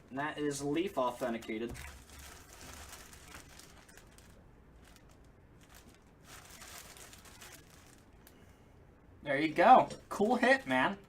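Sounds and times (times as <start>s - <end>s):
packaging rustling and crinkling: 1.1s - 8.4s.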